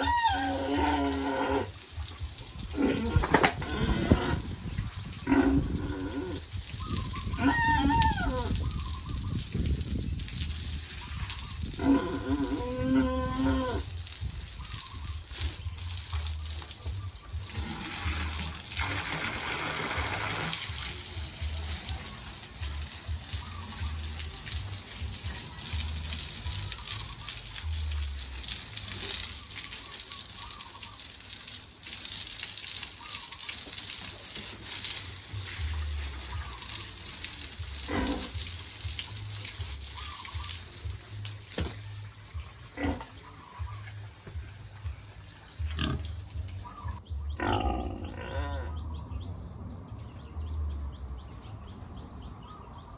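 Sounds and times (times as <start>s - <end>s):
farm animal call: 0.0s - 1.9s, 5.2s - 9.3s, 11.2s - 14.1s, 45.7s - 48.9s.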